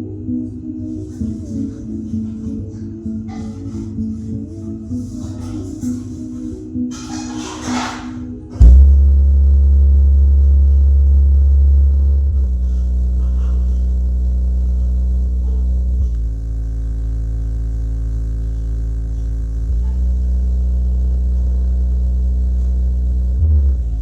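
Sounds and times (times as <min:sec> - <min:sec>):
subwoofer playing deep bass tones: 0:08.6 - 0:24.0.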